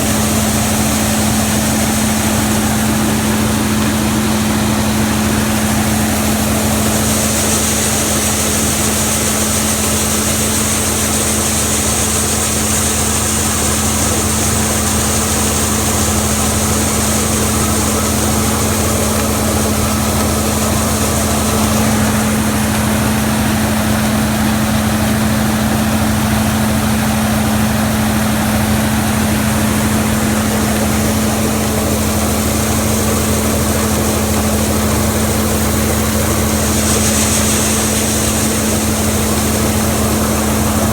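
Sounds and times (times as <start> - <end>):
diesel engine running: 0.0 - 40.9
high hiss: 30.3 - 40.9.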